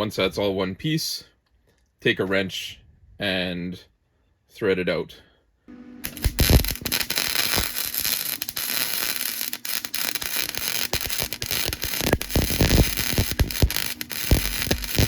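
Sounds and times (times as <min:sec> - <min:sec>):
electric arc welding crackle: 0:05.8 - 0:15.0.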